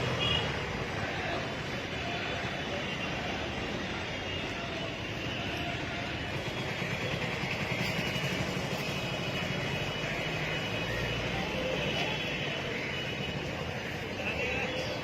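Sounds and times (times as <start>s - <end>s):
engines running: 3.5s - 11.5s.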